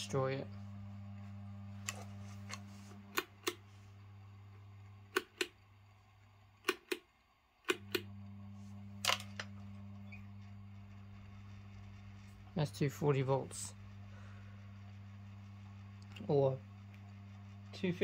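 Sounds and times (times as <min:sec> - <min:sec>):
ceiling fan motor hum: 0:00.0 - 0:18.0
sharp switch clicks: 0:03.1 - 0:03.6, 0:05.1 - 0:05.6, 0:06.6 - 0:08.1.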